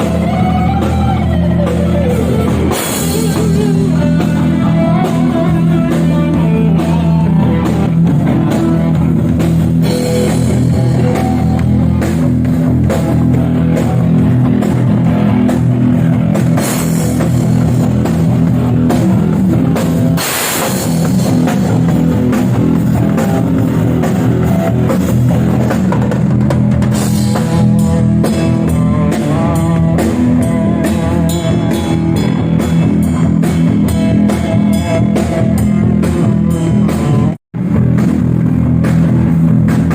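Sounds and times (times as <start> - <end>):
rock band playing: 0.0 - 39.9
cymbal crash: 20.2 - 21.5.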